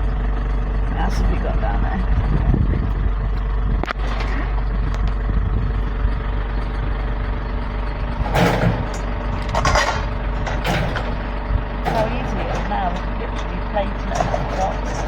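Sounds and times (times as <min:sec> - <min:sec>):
truck engine idling: 0:00.0 - 0:15.0.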